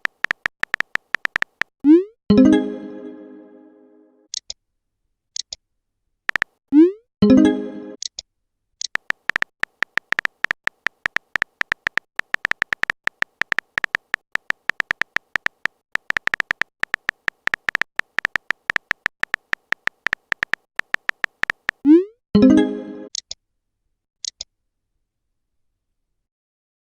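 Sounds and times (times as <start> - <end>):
smartphone keyboard typing clicks: 0.0 - 1.7, 6.3 - 6.6, 8.8 - 21.9.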